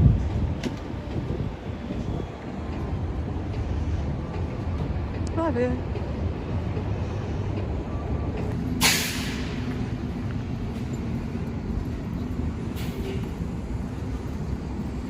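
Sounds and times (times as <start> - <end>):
street traffic rumbling: 0.0 - 15.0
air brakes hissing: 8.7 - 9.9, 12.6 - 13.5.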